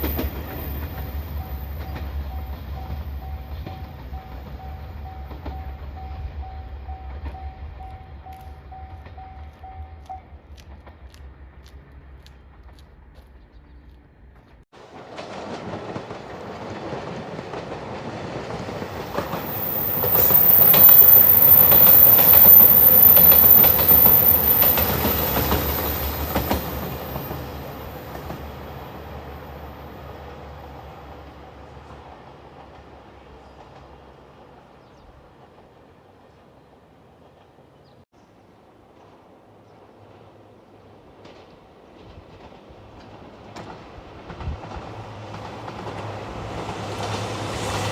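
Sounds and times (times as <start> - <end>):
train rumble passing: 0.0 - 38.0, 38.6 - 47.9
wheels clicking over rail joints: 8.3 - 29.3.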